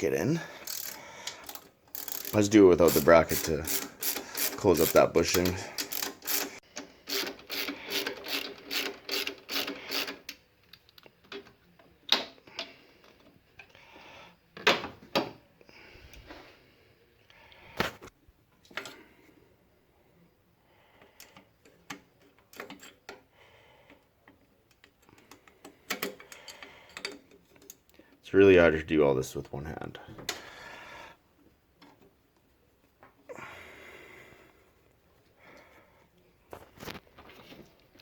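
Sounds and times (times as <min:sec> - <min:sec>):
ratchet wrench clicking: 0:00.6 - 0:10.3.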